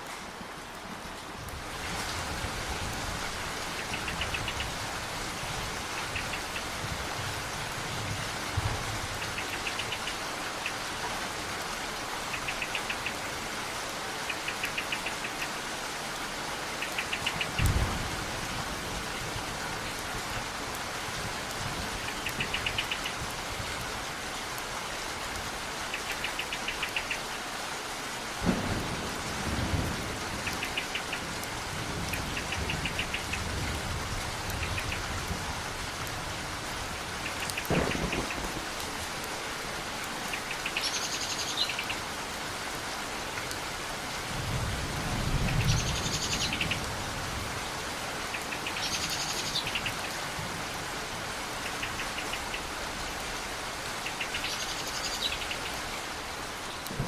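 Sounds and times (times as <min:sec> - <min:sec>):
steady rain: 0:00.0 - 0:57.0
thunder rumbling: 0:28.4 - 0:30.6, 0:37.6 - 0:39.1.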